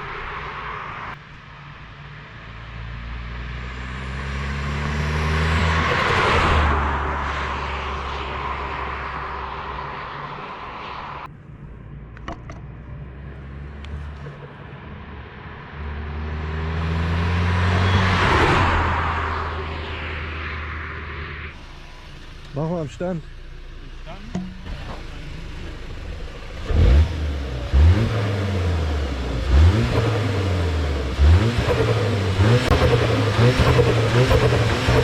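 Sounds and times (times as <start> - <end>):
turbo engine accelerating: 0.0 - 35.0.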